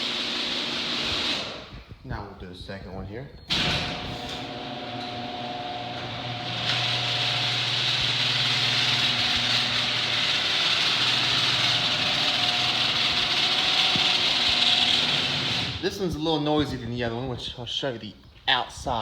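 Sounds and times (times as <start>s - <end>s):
garage door opener running: 0.0s - 1.8s, 3.5s - 15.8s.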